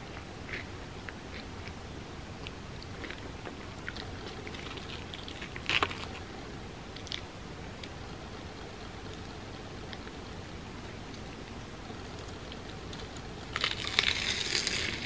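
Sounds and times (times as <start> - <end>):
crunchy chewing: 0.0 - 1.8, 2.4 - 6.3, 10.8 - 15.0.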